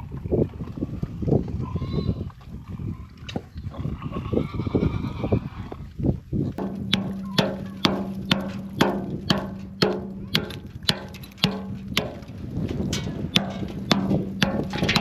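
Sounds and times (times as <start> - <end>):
held low note: 6.6 - 15.0
sharp percussive strikes: 6.6 - 15.0.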